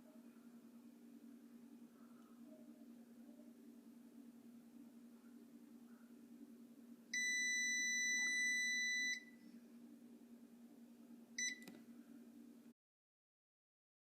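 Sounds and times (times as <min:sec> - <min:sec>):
microwave low hum: 0:00.0 - 0:12.7
microwave beeping: 0:07.1 - 0:09.4, 0:11.4 - 0:11.7.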